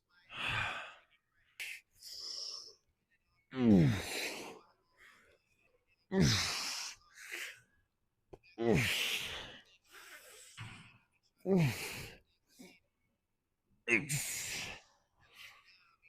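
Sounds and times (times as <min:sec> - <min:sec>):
man breathing heavily: 0:00.2 - 0:02.8, 0:03.6 - 0:05.4, 0:06.2 - 0:07.7, 0:08.6 - 0:12.7, 0:14.0 - 0:15.8
man groaning: 0:03.5 - 0:04.4, 0:06.1 - 0:06.8, 0:08.6 - 0:09.4, 0:11.5 - 0:12.1, 0:13.9 - 0:14.7.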